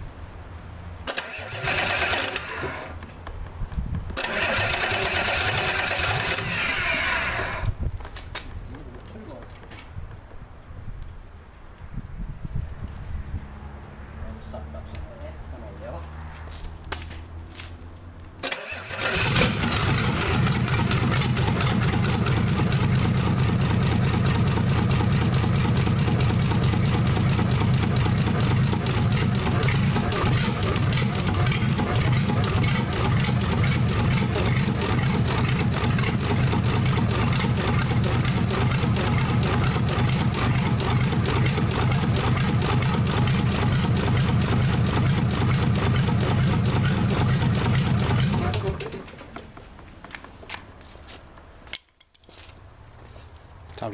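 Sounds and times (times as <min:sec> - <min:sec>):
diesel engine starting and idling: 0:01.0 - 0:03.0, 0:04.2 - 0:07.8, 0:18.4 - 0:49.8.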